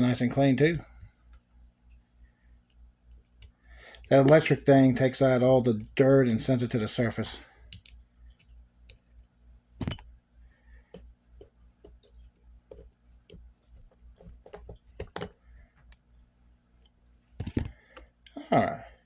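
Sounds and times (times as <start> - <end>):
small metal clicks and taps: 7.7 - 9.1.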